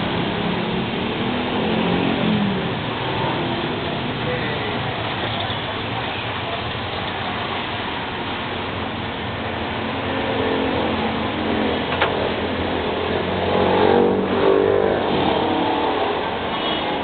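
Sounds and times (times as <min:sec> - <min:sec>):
vehicle engines running: 0:00.0 - 0:17.0.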